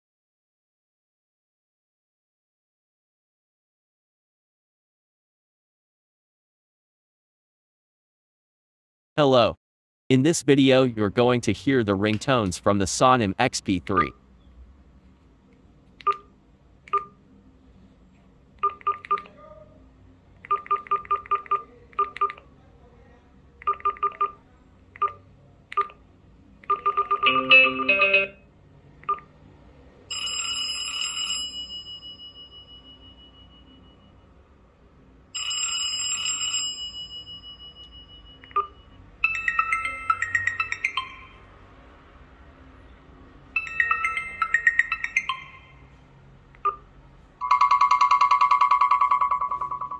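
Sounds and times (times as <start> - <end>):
phone ringtone tunes: 26.7 - 28.5, 30.1 - 34.1, 35.3 - 41.6, 43.5 - 46.0, 47.4 - 49.9.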